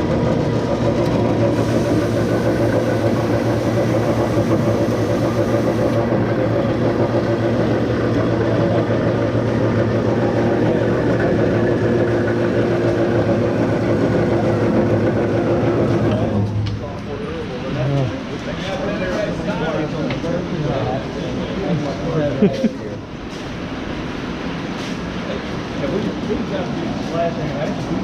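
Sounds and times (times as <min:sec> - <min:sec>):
industrial power saw droning: 0:00.0 - 0:19.8.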